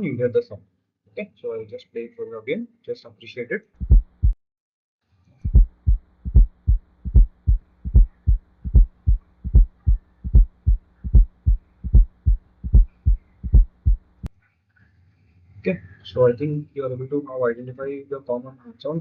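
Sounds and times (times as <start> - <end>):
heartbeat thumps: 3.8 - 4.4, 5.4 - 14.1
low steady hum: 5.4 - 14.3.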